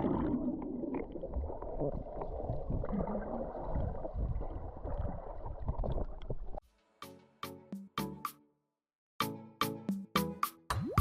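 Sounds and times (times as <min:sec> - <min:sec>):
sea water sloshing and splashing: 0:00.0 - 0:06.6.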